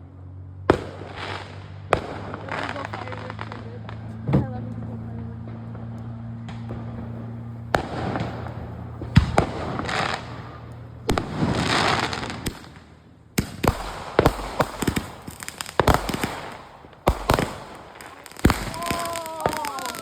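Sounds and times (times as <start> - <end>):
low steady hum: 0.0 - 18.8
firework bangs: 0.6 - 20.0
firecracker crackling pops: 0.7 - 20.0
fireworks fizzing hiss: 7.8 - 20.0.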